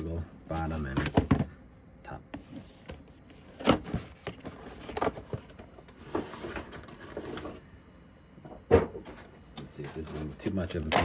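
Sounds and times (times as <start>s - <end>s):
cardboard rustling and sliding: 2.4s - 7.6s.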